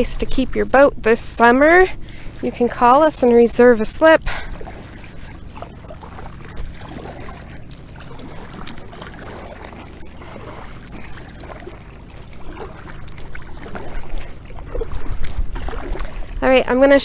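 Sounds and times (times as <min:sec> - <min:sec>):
paddle splashing water: 0:00.0 - 0:17.0
steady low rumble: 0:00.0 - 0:17.0
water trickling: 0:00.0 - 0:17.0.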